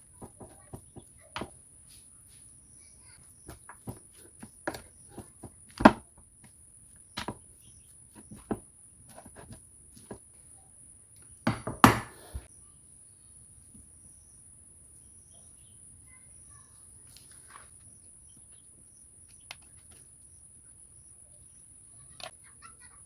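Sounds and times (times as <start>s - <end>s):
kitchen clicks and knocks: 11.5s - 12.5s.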